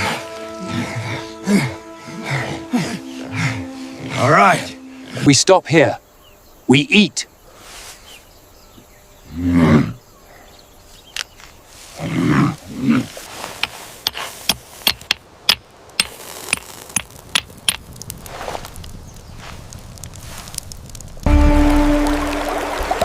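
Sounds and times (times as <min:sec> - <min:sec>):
sharp irregular cracks: 0:13.6 - 0:21.3.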